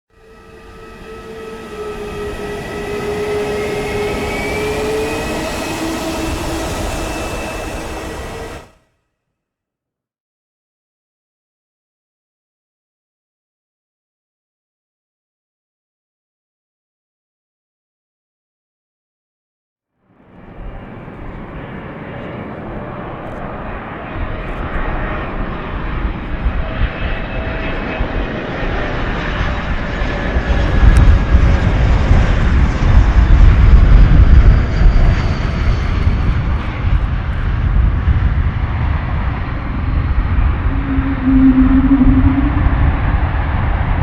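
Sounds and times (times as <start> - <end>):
airliner engines rumbling: 0.1 - 8.7, 20.3 - 44.0.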